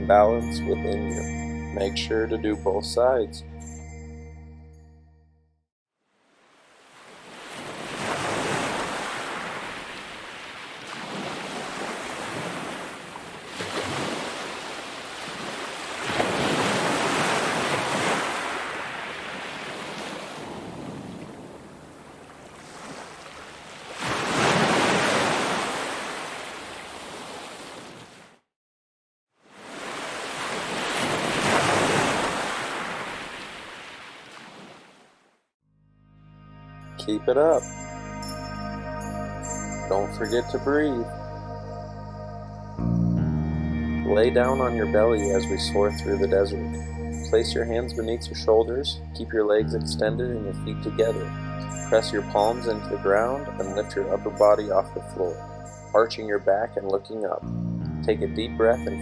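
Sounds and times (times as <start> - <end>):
ocean waves rushing and washing: 6.3 - 28.3, 29.4 - 35.2.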